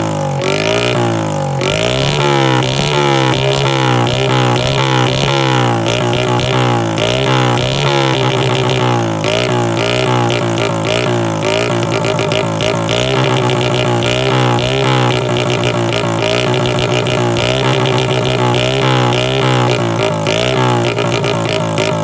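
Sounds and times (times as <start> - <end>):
motorcycle engine revving: 0.0 - 22.0.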